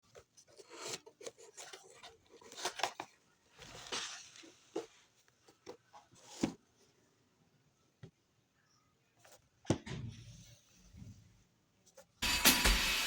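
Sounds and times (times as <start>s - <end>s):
packaging rustling and scraping: 0.1s - 6.6s.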